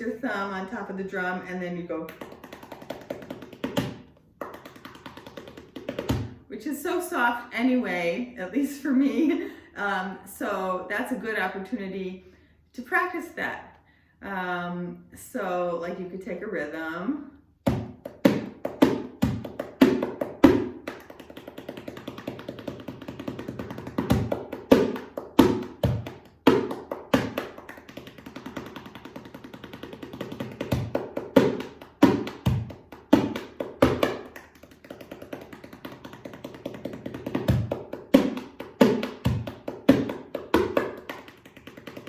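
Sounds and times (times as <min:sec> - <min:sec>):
darbuka rhythm: 0:02.1 - 0:06.4, 0:17.6 - 0:42.0.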